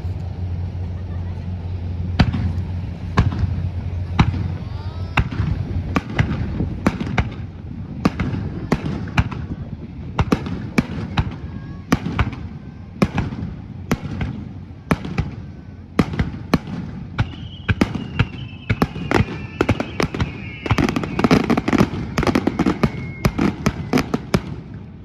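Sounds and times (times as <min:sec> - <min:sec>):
fireworks bursting: 0:01.6 - 0:25.0
faint descending whistle: 0:17.2 - 0:24.0.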